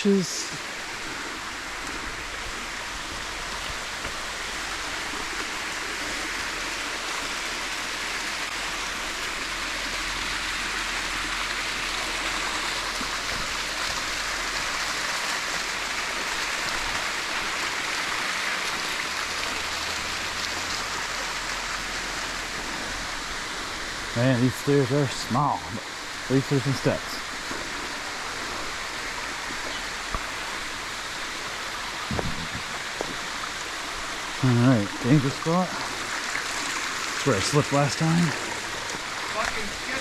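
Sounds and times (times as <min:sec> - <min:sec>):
water rushing over rocks: 0:00.0 - 0:40.0.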